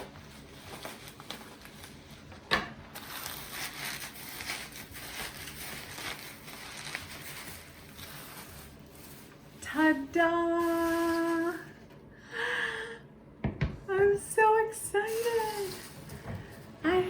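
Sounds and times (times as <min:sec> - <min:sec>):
packaging rustling and crinkling: 0:00.0 - 0:11.6, 0:15.1 - 0:16.8.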